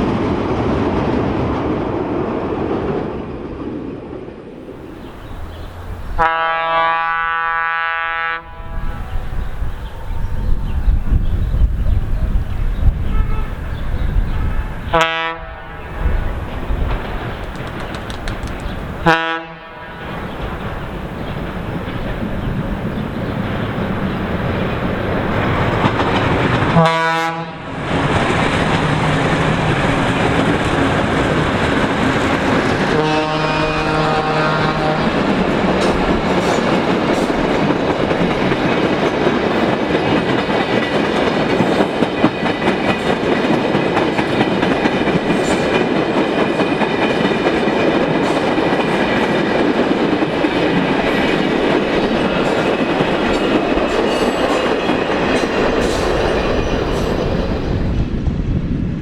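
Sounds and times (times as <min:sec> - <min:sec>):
train rumble and wheel clatter: 0:00.0 - 0:59.0
train horn: 0:06.2 - 0:10.5, 0:13.0 - 0:16.2, 0:19.0 - 0:20.2, 0:26.7 - 0:27.8, 0:32.7 - 0:37.3.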